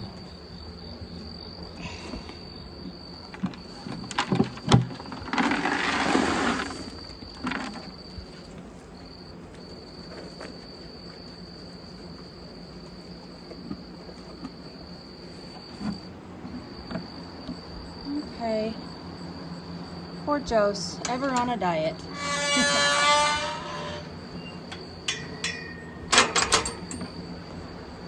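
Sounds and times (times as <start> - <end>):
crickets trilling: 0.0 - 28.0
loud rustling noise: 3.6 - 16.0.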